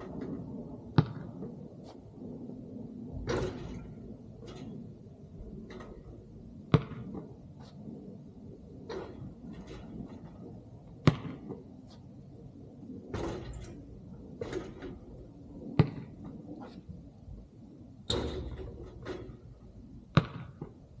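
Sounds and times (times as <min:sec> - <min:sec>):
basketball thudding on court: 0:00.9 - 0:01.3, 0:06.7 - 0:07.2, 0:11.0 - 0:11.6, 0:13.1 - 0:13.7, 0:14.4 - 0:14.9, 0:15.8 - 0:16.4, 0:20.1 - 0:20.8.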